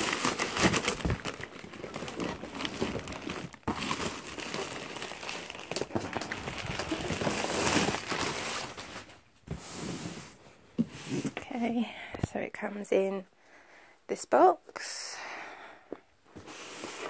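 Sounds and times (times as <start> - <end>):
packaging crinkling and rustling: 0.0 - 9.3.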